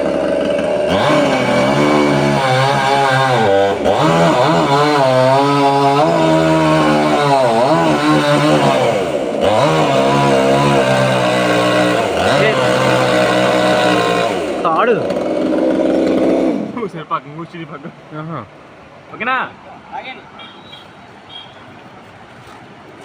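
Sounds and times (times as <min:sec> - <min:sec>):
chainsaw running hard: 0:00.0 - 0:17.0.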